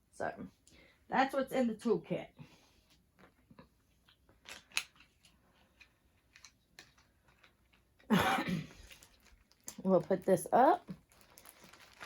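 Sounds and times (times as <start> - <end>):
plastic rustle: 4.1 - 12.0.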